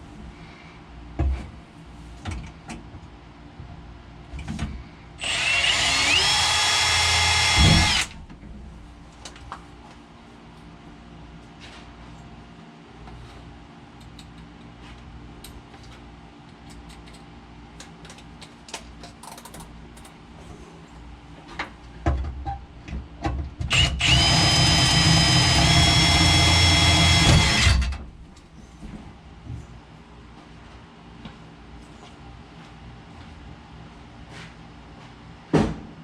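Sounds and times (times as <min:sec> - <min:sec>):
electric drill whining: 0:05.2 - 0:08.2, 0:23.7 - 0:27.9.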